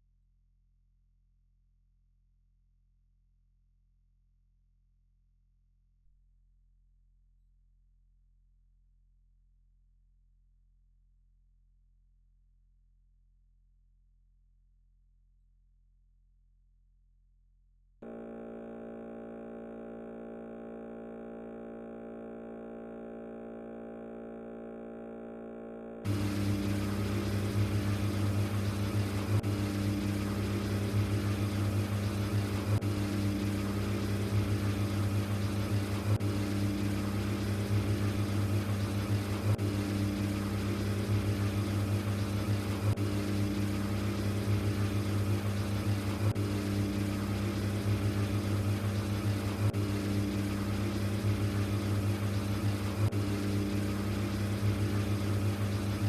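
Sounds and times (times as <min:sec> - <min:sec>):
washing machine motor hum: 0:26.1 - 0:56.0.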